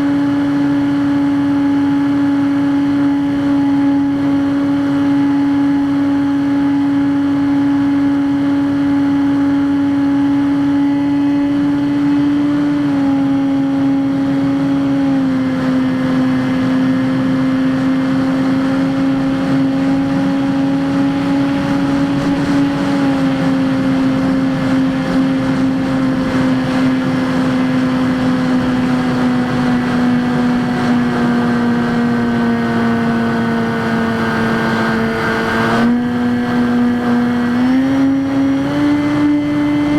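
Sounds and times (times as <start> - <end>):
electric motor propeller buzzing: 0.0 - 39.9
rush of air: 19.3 - 30.9.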